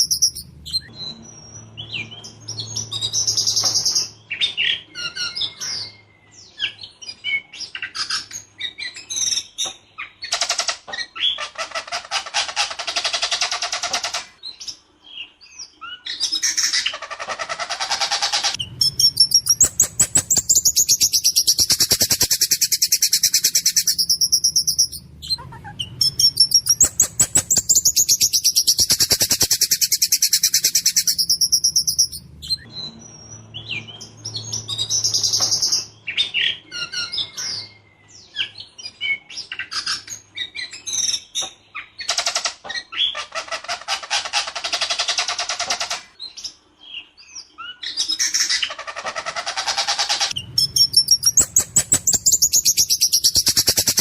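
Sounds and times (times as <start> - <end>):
songbird singing: 0.0 - 11.7, 18.4 - 42.1, 50.2 - 54.0.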